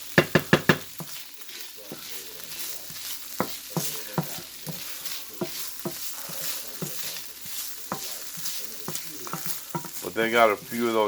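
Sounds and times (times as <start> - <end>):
food sizzling in a frying pan: 0.0 - 11.0
utensil knocking against pan: 0.1 - 1.2, 3.0 - 7.1, 7.9 - 10.0.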